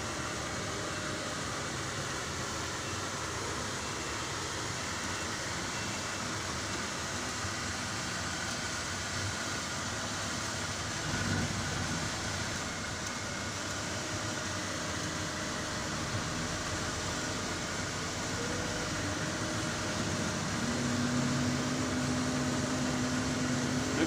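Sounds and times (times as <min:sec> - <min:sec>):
diesel engine humming: 0:00.0 - 0:24.0.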